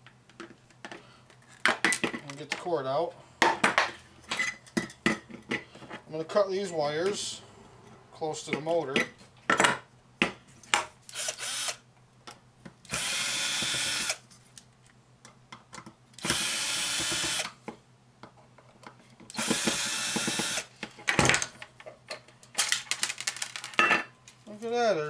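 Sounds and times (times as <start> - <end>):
power drill running: 11.1 - 11.8, 12.9 - 14.2, 16.2 - 17.5, 19.3 - 20.7.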